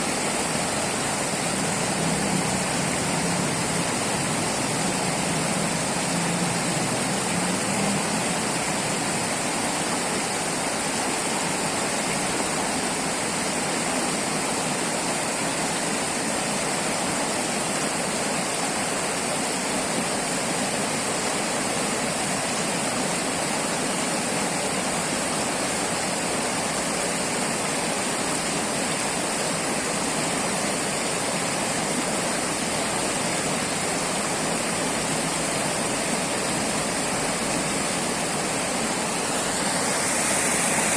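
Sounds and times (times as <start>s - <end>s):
river water rushing: 0.0s - 40.9s.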